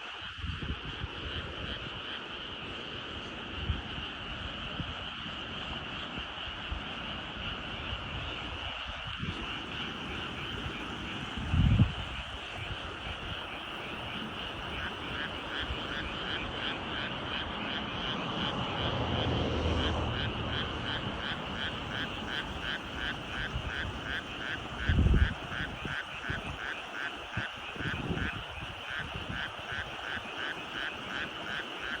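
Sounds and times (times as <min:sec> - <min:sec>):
frog chorus: 0:00.0 - 0:32.0
rhythmic frog call: 0:09.3 - 0:32.0.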